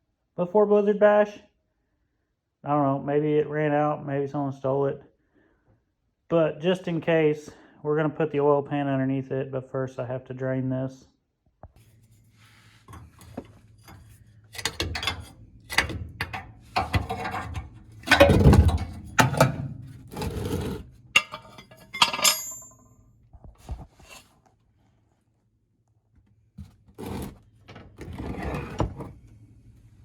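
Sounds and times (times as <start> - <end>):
metal tools clinking and scraping: 11.9 - 22.9
ringing metal clank: 21.2 - 23.0.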